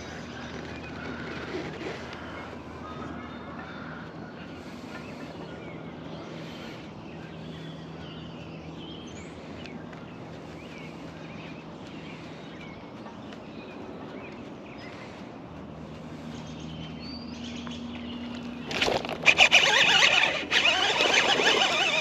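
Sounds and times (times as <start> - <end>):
birds chirping: 0.0 - 22.0
steady low hum: 0.0 - 22.0.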